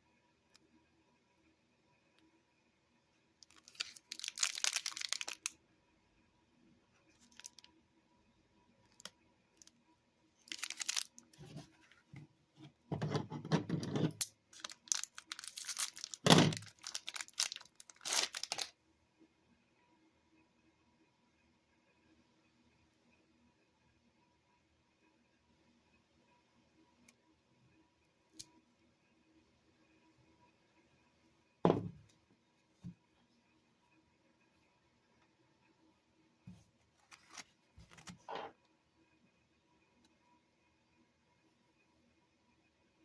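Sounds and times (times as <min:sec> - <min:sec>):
packaging tearing and crinkling: 0:03.5 - 0:05.5, 0:10.4 - 0:11.3, 0:14.6 - 0:18.7.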